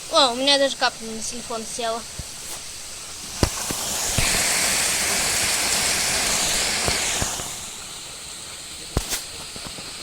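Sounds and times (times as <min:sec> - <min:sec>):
heavy rain hissing: 0:00.0 - 0:10.0.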